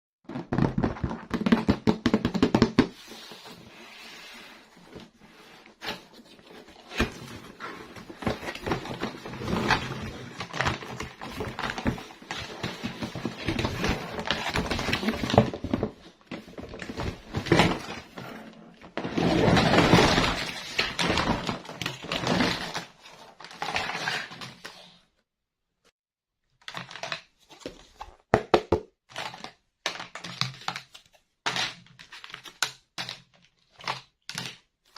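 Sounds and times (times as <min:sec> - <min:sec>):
packaging crinkling and rustling: 0:05.8 - 0:24.8.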